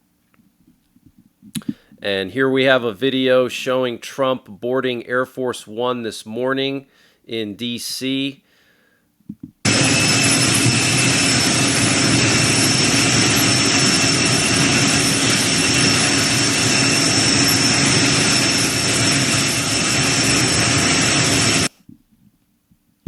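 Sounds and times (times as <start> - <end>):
jet engines running: 9.6 - 21.7.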